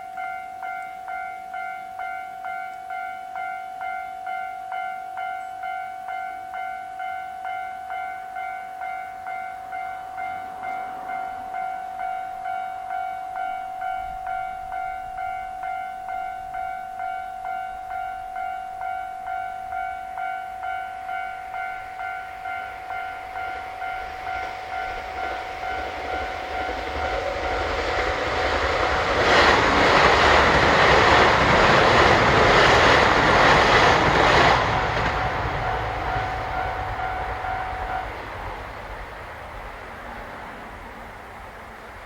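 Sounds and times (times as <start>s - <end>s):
level-crossing warning bell: 0.0s - 39.9s
diesel train passing: 0.0s - 42.0s.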